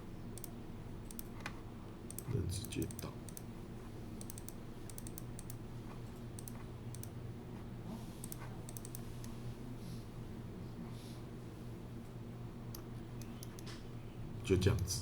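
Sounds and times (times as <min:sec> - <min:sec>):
steady low hum: 0:00.0 - 0:15.0
mouse and keyboard clicking: 0:01.1 - 0:03.5, 0:04.2 - 0:07.1, 0:08.2 - 0:09.4, 0:12.7 - 0:13.8.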